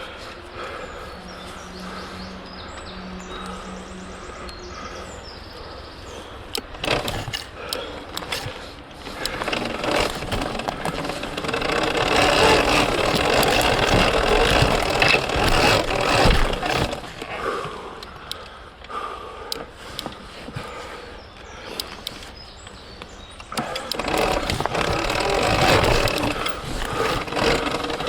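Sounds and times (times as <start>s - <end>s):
bike chassis knocking and clattering: 6.6s - 17.3s, 23.5s - 28.0s
tyres rushing over mud: 6.6s - 17.8s, 23.6s - 28.0s.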